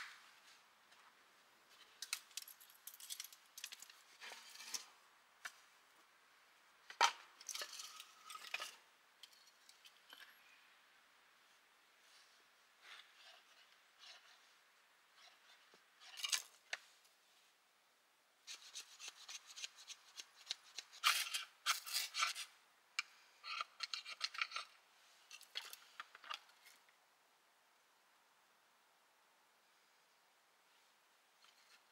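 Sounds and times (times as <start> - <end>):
dry scraping and rubbing: 3.9 - 5.0, 12.0 - 16.5.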